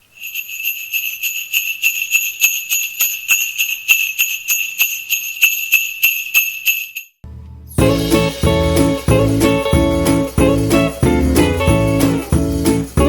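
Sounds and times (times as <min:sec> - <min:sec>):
hand bell ringing: 0:00.0 - 0:07.1.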